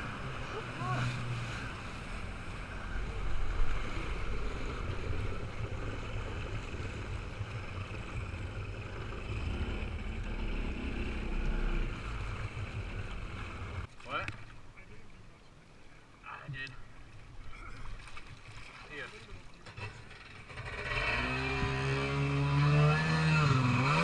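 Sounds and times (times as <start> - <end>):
jet ski engine running: 0.0 - 13.9
rushing water: 0.0 - 20.7
wind: 0.0 - 24.0.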